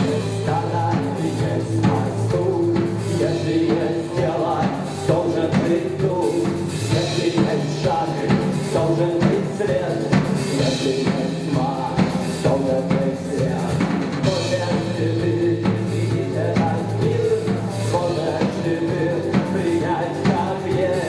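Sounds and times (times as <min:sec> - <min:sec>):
drum kit beat: 0:00.0 - 0:21.0
rock band playing: 0:00.0 - 0:21.0.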